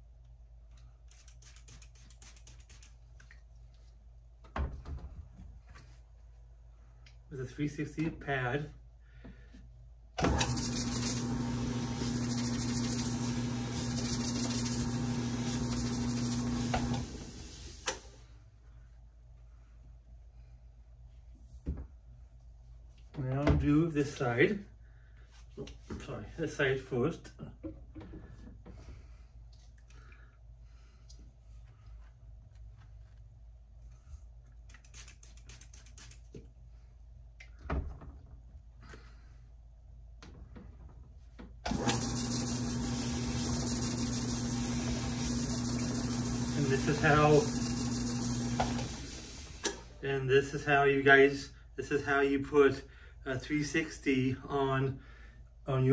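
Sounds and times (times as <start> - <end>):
motor humming: 10.2 - 18.0, 41.7 - 49.9
sanding pad on ball: 10.7 - 17.4, 41.9 - 49.4.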